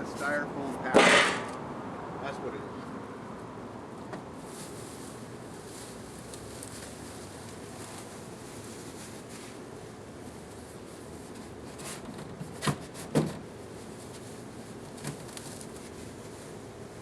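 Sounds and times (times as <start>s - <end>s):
knocks handling a cardboard box: 12.4s - 13.4s.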